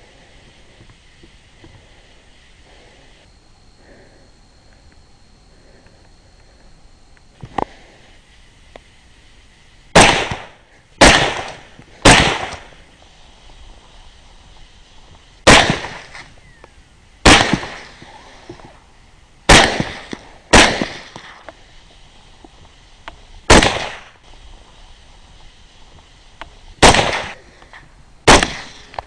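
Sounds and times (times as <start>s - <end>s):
rifle shots echoing: 10.0s - 12.7s, 15.4s - 16.2s, 17.2s - 18.0s, 19.5s - 21.3s, 23.5s - 24.1s, 26.8s - 27.4s, 28.2s - 29.0s.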